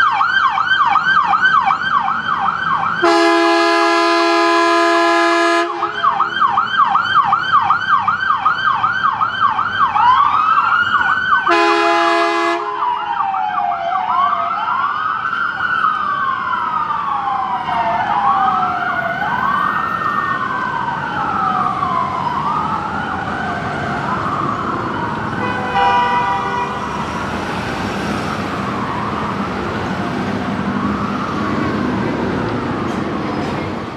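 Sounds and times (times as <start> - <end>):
electronic sirens: 0.0 - 33.9
air horn blast: 3.0 - 6.1, 11.5 - 12.8, 25.4 - 26.9.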